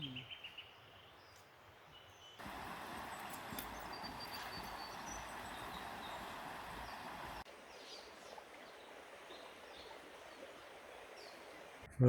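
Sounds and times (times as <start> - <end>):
high bird chirps: 3.0 - 7.4.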